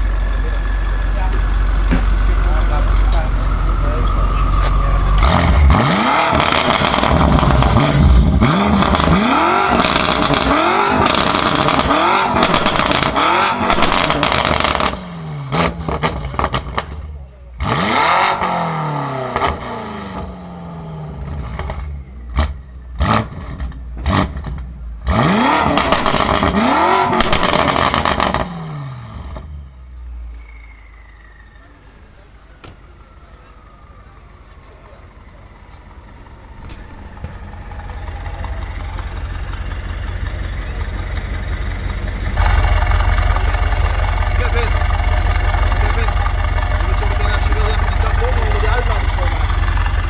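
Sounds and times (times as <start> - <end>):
exhaust pops and crackles: 0.0 - 15.0, 15.6 - 17.1, 25.6 - 28.5, 34.3 - 50.0
car engine revving: 0.0 - 17.0, 17.6 - 29.3, 32.1 - 50.0.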